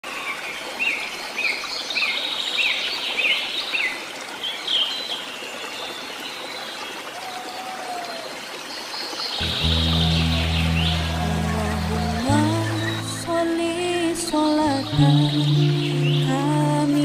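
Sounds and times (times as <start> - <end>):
birds chirping: 9.4 - 17.0.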